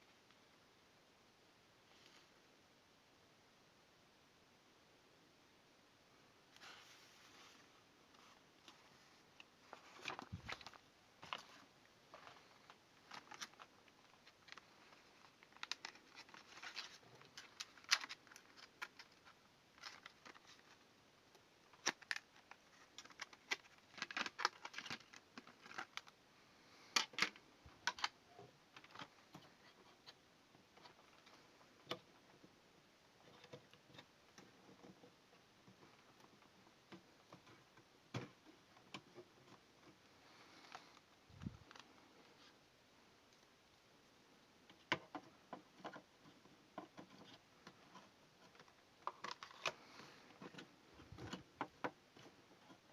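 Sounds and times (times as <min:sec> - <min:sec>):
packaging rustling: 0:09.7 - 0:20.8, 0:21.7 - 0:26.1.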